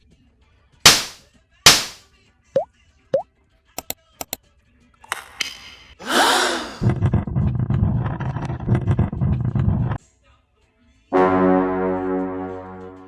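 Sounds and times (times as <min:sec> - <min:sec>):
brass-like held note: 0:11.2 - 0:13.0.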